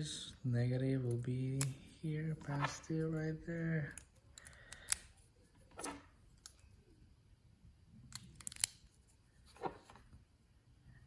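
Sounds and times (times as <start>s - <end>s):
batteries clicking into plastic holder: 8.2s - 8.8s.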